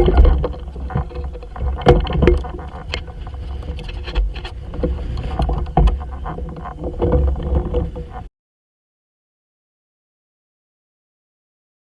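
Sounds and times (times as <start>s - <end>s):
clicks and knocks from kayak hull: 0.0s - 8.3s
wind rumbling on microphone: 0.0s - 8.3s.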